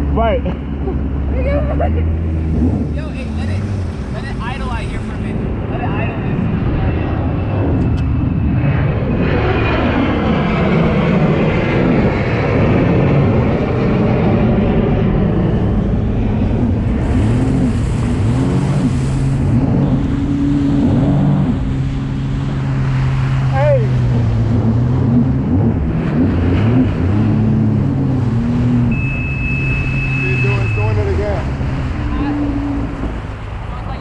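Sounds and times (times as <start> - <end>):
water noise: 0.0 - 34.0
wind: 0.0 - 34.0
jet ski engine idling: 27.6 - 34.0.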